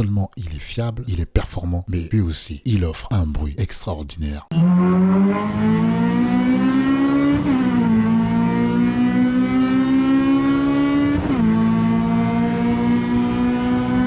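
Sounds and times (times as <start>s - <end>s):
car engine accelerating hard: 4.5s - 14.0s.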